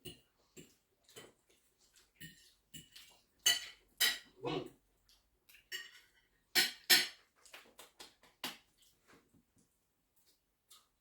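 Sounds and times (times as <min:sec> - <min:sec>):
cutlery and dishes clinking: 0:02.0 - 0:04.8, 0:05.5 - 0:07.6.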